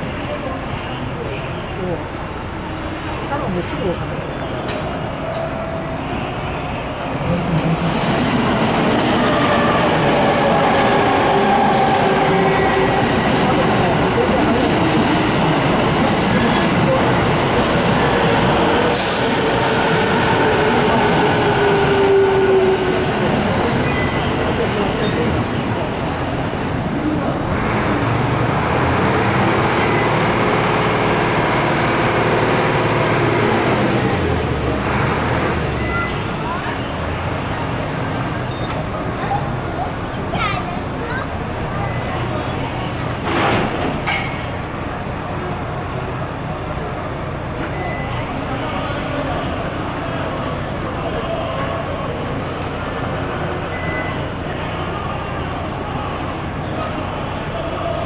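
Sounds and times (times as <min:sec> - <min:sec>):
electric train passing: 0:00.0 - 0:38.3
road traffic noise: 0:00.0 - 0:58.0.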